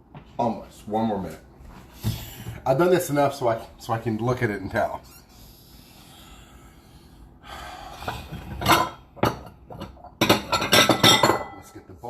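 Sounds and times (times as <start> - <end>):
dishes and utensils clinking: 8.1 - 11.8.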